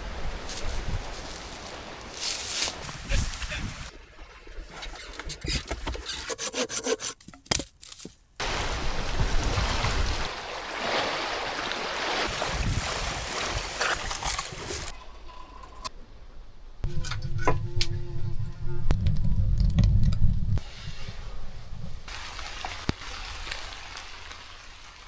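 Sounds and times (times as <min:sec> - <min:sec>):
rushing water: 0:00.0 - 0:05.0, 0:08.4 - 0:15.4, 0:20.6 - 0:25.0.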